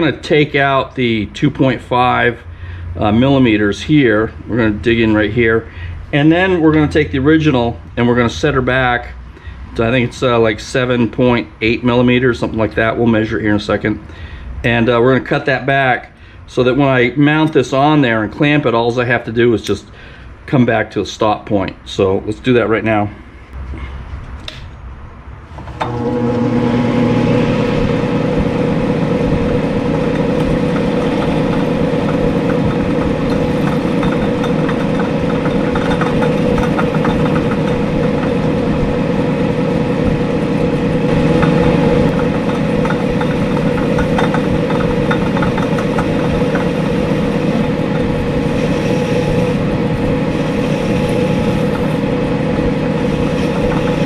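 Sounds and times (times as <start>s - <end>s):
lathe motor humming: 25.7s - 54.0s.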